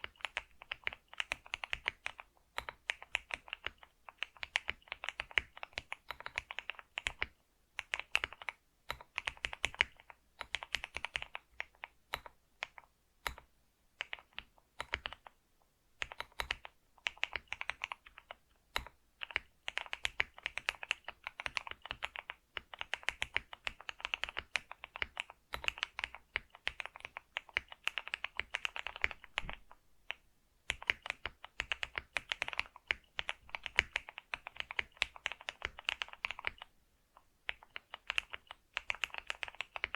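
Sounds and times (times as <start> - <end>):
typing on computer keyboard: 0.0 - 15.4, 16.0 - 36.7, 37.5 - 39.9.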